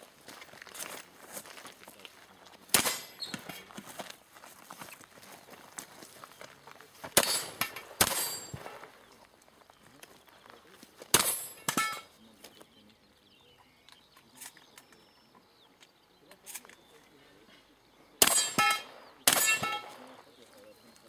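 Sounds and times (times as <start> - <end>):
shotgun shots: 2.7 - 3.2, 7.2 - 9.0, 11.1 - 12.0, 18.2 - 20.2
metallic clanging: 2.8 - 3.5, 7.2 - 9.0, 11.2 - 12.1, 18.2 - 20.2.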